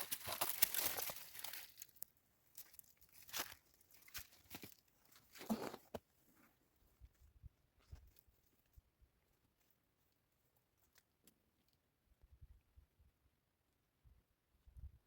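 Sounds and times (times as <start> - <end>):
rustling handling noise: 0.0 - 5.9.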